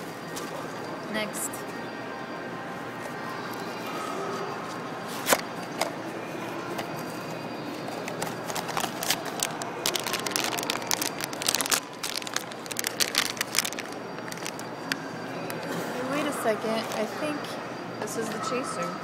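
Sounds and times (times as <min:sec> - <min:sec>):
packaging crinkling: 0:07.9 - 0:14.8.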